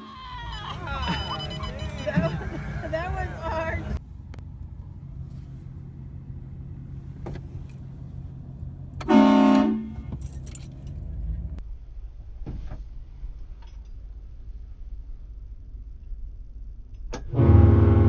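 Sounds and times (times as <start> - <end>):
vehicle engine running: 0.0 - 11.6
train horn blast: 9.0 - 10.2, 17.3 - 18.0.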